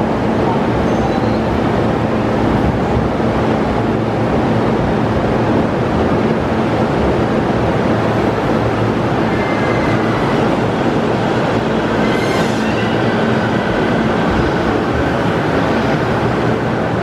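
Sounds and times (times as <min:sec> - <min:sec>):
electric train rumbling: 0:00.0 - 0:17.0.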